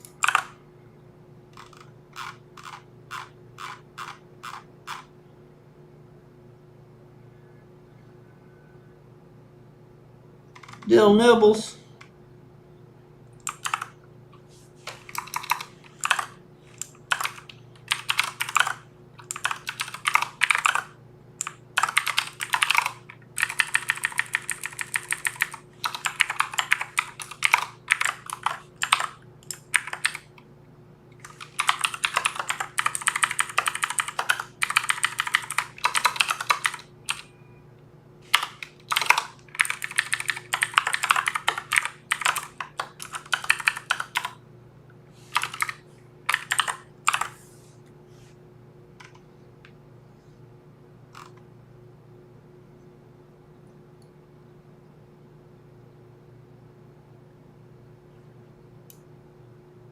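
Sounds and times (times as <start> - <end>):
mechanical keyboard typing: 0.0 - 0.6, 1.6 - 5.1, 10.6 - 10.9, 13.4 - 13.9, 14.9 - 30.3, 31.2 - 37.3, 38.3 - 44.4, 45.3 - 47.4, 51.1 - 51.4.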